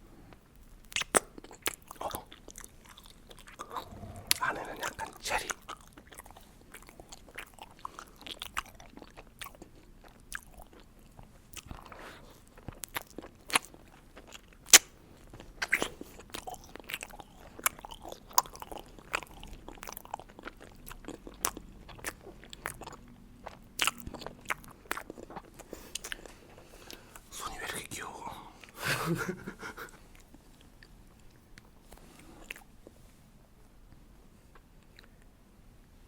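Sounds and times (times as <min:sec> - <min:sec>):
chewing gummy candy: 0:00.6 - 0:28.8.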